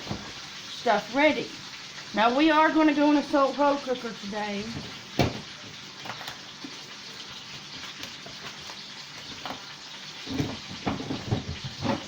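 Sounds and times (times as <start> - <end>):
meat sizzling in a skillet: 0.0 - 12.0
knocks and clatters: 10.3 - 12.0.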